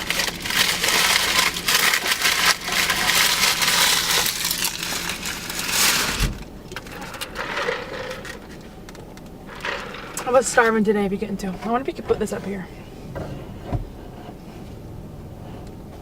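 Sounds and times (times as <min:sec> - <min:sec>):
paper wrappers crumpling: 0:00.0 - 0:10.2
low thump: 0:13.1 - 0:14.0.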